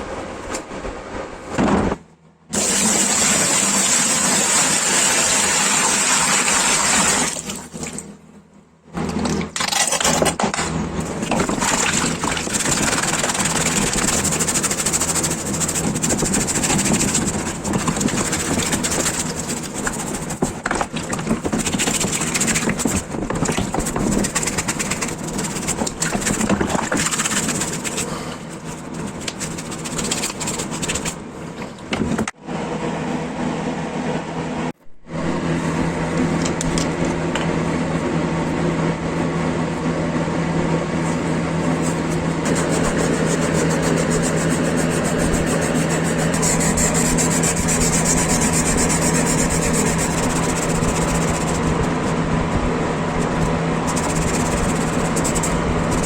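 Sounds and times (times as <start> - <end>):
abrasive rubbing on metal part: 21.3 - 31.2, 41.7 - 52.2, 52.8 - 56.0.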